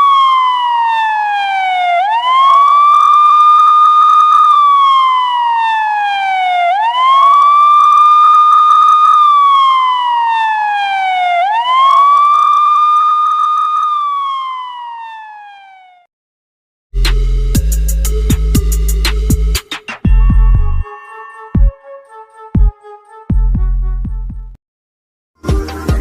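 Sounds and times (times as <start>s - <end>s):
police siren wailing: 0.0s - 16.1s, 20.1s - 23.4s.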